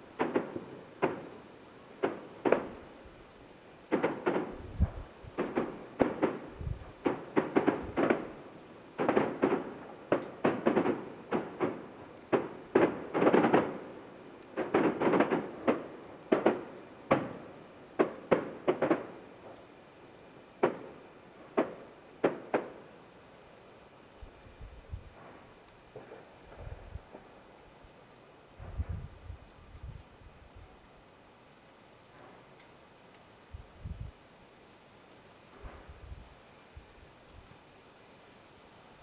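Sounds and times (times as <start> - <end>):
distant fireworks bangs echoing: 0.2 - 3.0, 3.9 - 19.6, 20.6 - 22.9, 25.1 - 27.3.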